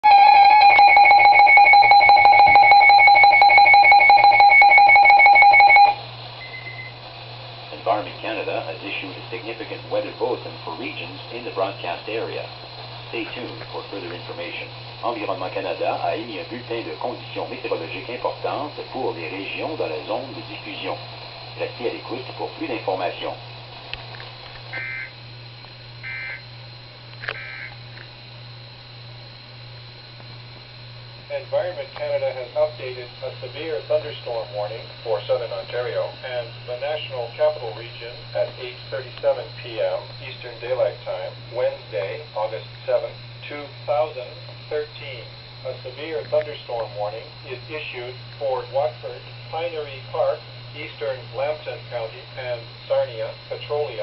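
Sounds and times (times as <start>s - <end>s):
warbling electronic alarm tone: 0.0s - 6.9s, 24.8s - 25.1s, 26.0s - 26.5s, 27.4s - 27.7s
steady low hum: 0.0s - 54.0s.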